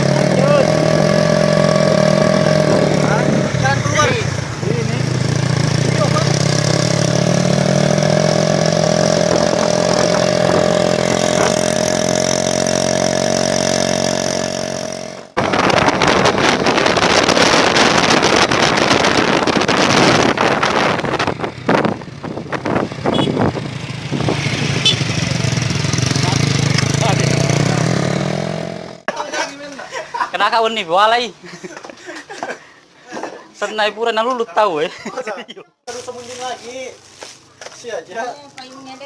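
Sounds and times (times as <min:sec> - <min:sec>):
loud rushing noise: 0:00.0 - 0:12.6, 0:15.4 - 0:28.8
vehicle engine running: 0:00.0 - 0:14.6, 0:15.2 - 0:29.1.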